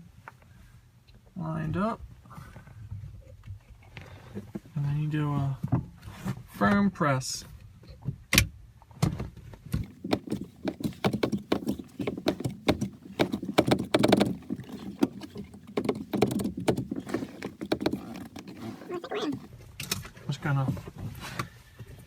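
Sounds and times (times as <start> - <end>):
plastic clicks taps and knocks: 9.8 - 19.5.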